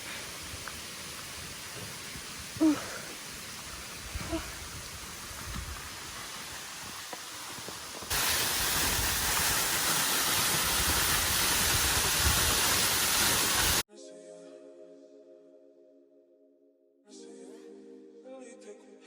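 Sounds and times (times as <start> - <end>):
outdoor noise: 0.0 - 13.8
waterfall roaring: 8.0 - 13.8.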